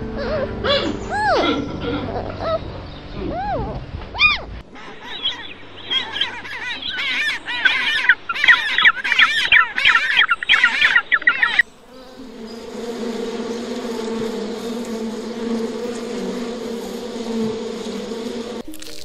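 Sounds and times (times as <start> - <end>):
animal chirping calls: 0.7 - 11.6.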